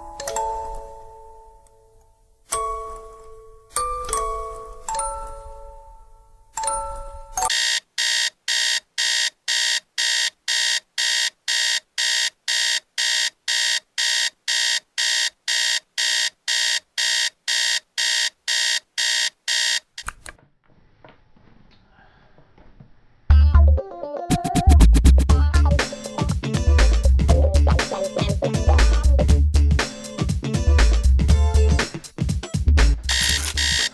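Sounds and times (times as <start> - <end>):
alarm clock beeping: 7.4 - 20.0, 33.1 - 33.9.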